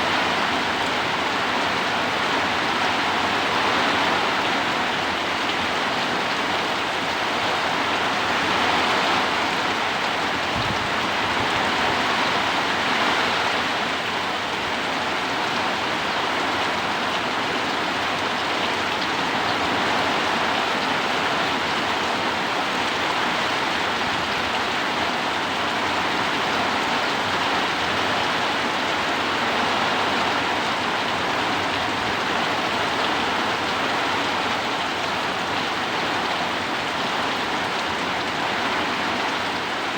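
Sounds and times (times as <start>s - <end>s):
heavy rain: 0.0s - 39.9s
strong wind: 10.3s - 12.4s.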